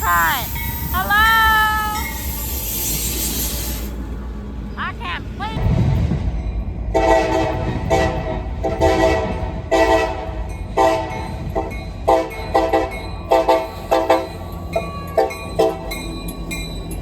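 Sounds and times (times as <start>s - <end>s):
train rumbling: 0.0s - 17.0s
locomotive air horn blasts: 6.9s - 14.3s, 15.2s - 16.0s.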